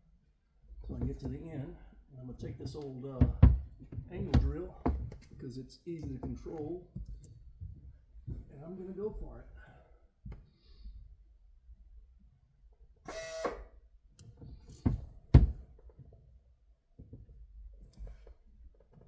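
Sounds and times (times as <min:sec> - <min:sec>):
angle drill spinning up: 0:13.1 - 0:13.8.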